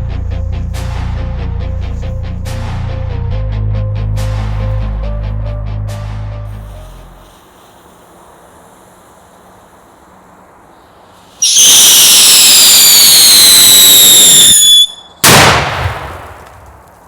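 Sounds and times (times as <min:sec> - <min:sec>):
firecracker whistle: 0:11.4 - 0:16.2
firecracker bang: 0:11.4 - 0:17.0.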